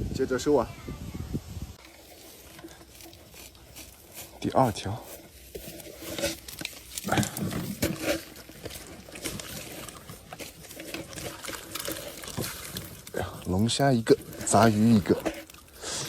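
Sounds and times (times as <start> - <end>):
wet net knocking and rustling: 5.0 - 15.8
water splashing and dripping: 6.4 - 16.0.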